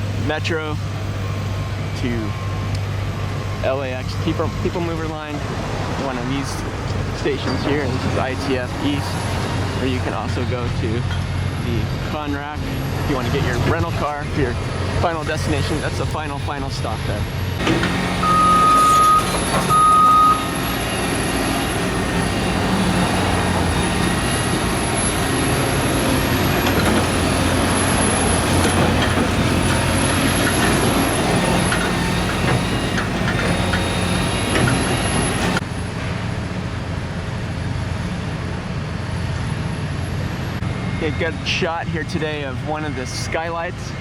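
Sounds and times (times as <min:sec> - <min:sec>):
truck and traffic noise: 0:00.0 - 0:44.0
reversing alarm beep: 0:01.2 - 0:05.2, 0:17.5 - 0:35.6, 0:40.6 - 0:44.0.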